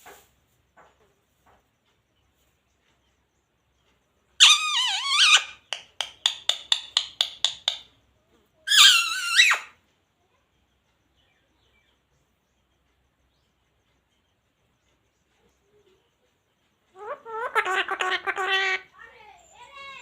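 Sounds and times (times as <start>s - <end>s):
parrot warbling call: 4.4s - 5.7s, 8.7s - 9.7s, 17.0s - 19.0s.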